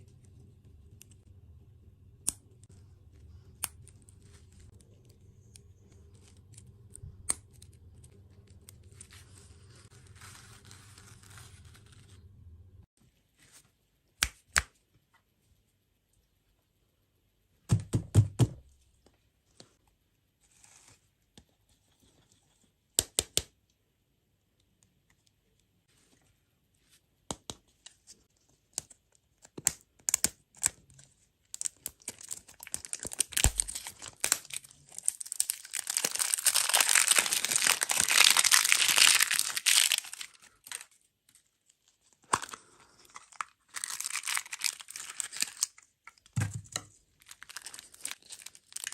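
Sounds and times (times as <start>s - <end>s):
packaging crinkling and tearing: 29.6s - 48.9s.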